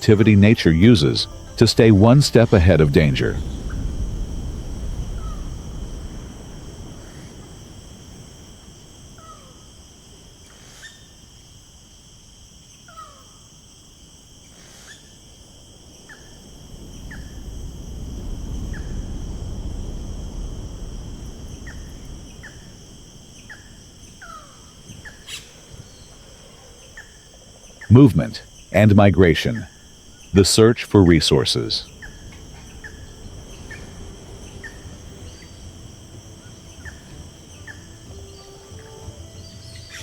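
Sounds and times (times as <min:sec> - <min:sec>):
bird chirps: 0:00.0 - 0:05.8, 0:23.4 - 0:40.0
low rumble: 0:00.0 - 0:06.8
high insect drone: 0:00.0 - 0:40.0.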